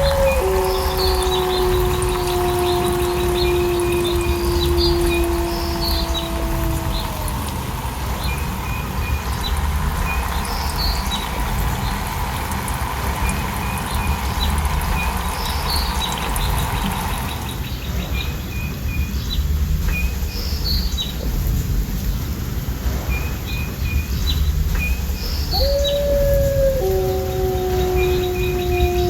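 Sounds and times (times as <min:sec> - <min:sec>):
wolf howl: 0:00.0 - 0:08.2, 0:25.5 - 0:29.0
falling water rushing: 0:00.0 - 0:18.4, 0:21.2 - 0:29.0
songbirds chirping: 0:00.0 - 0:29.0.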